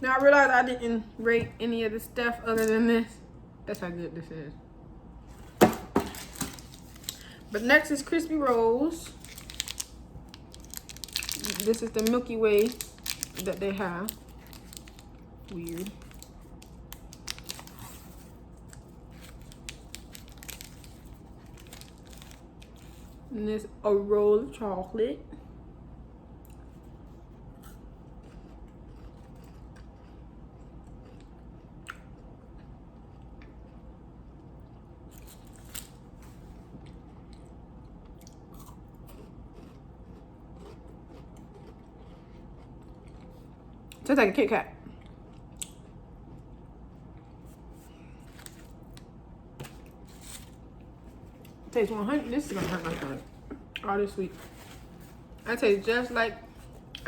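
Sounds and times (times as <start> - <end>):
snack wrapper crinkling: 6.1 - 7.6, 9.0 - 23.2, 35.2 - 36.0, 48.3 - 51.6
crunching wafer roll: 8.9 - 23.1.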